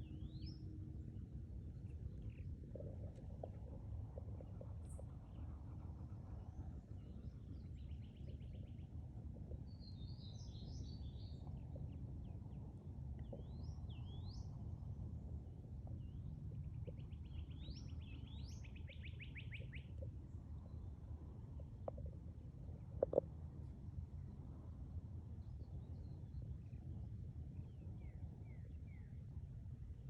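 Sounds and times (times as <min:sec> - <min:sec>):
songbirds singing: 0:00.0 - 0:03.8, 0:06.3 - 0:14.6, 0:15.8 - 0:21.0
low rumble: 0:00.0 - 0:19.0.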